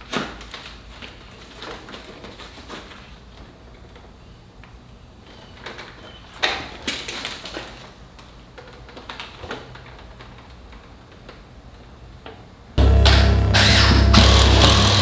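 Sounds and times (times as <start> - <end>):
knocks and clicks: 12.8 - 15.0.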